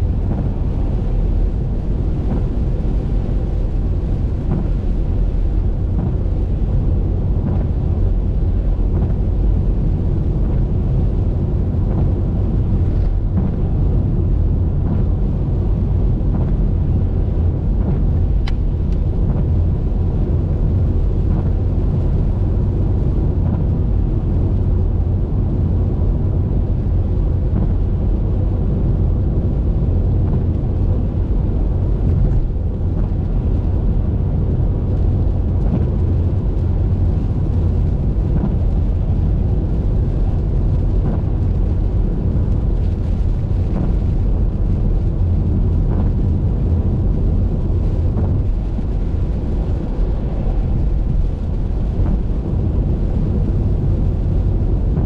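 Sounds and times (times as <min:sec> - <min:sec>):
car driving road and wind noise: 0:00.0 - 0:55.0.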